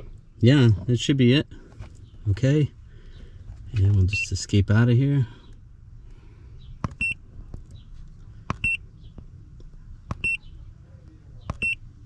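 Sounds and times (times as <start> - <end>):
button clicks: 11.5 - 11.8.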